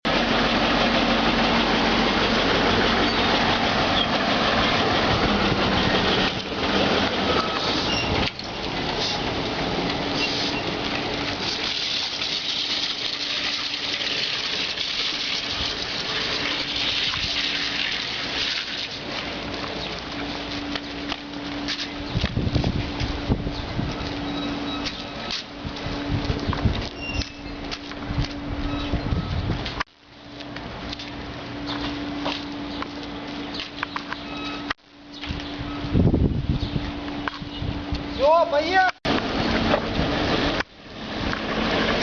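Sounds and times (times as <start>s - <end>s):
trolleybus rushing noise: 0.1s - 29.8s, 39.1s - 42.0s.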